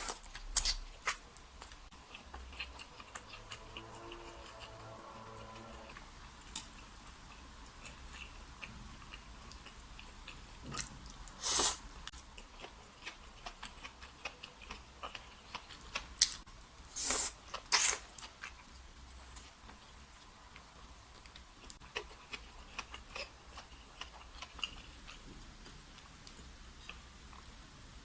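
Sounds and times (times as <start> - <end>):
soft chewing with mouth clicks: 0.0 - 5.0, 5.9 - 27.7.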